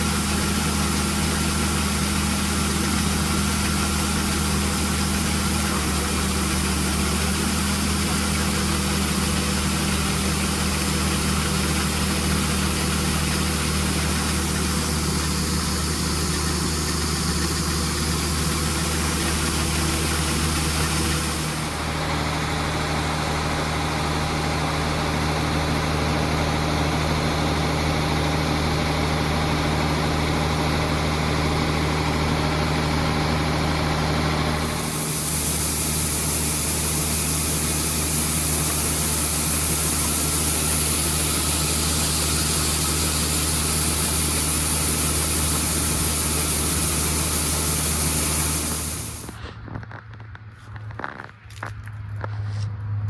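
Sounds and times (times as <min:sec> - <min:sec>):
machine hiss: 0:00.0 - 0:22.2, 0:34.6 - 0:49.4
combine harvester hum: 0:00.0 - 0:53.0.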